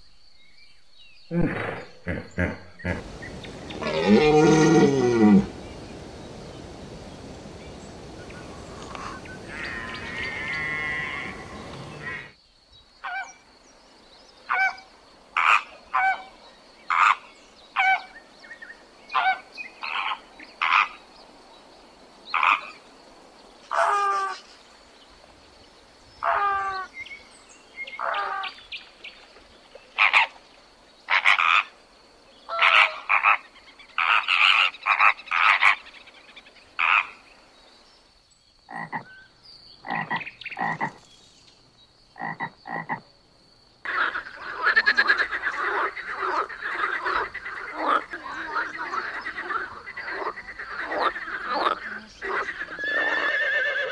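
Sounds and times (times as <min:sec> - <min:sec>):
frog croaking: 0:01.3 - 0:06.0, 0:08.4 - 0:12.4, 0:31.1 - 0:31.8, 0:36.8 - 0:37.2, 0:38.7 - 0:41.0, 0:42.1 - 0:43.1, 0:43.8 - 0:53.8
animal call: 0:01.3 - 0:06.2, 0:08.3 - 0:12.4, 0:13.0 - 0:13.4, 0:14.5 - 0:14.8, 0:32.5 - 0:33.4, 0:43.8 - 0:53.9.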